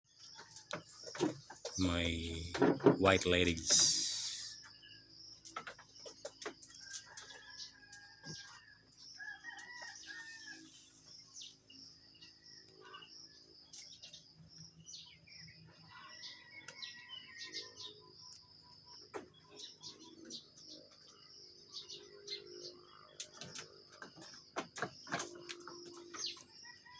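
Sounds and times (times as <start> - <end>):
faint rooster crowing: 6.8 - 11.0, 15.8 - 18.0, 26.2 - 26.9.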